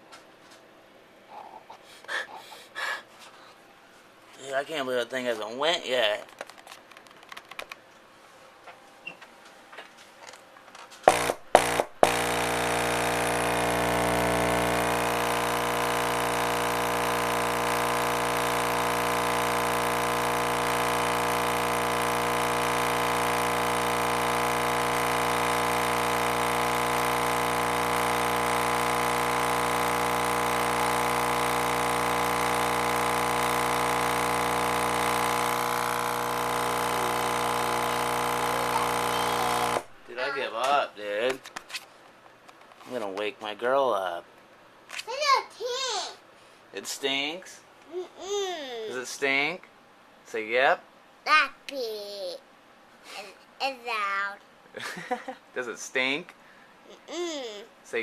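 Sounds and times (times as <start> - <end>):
subwoofer mains buzz: 11.0 - 40.4.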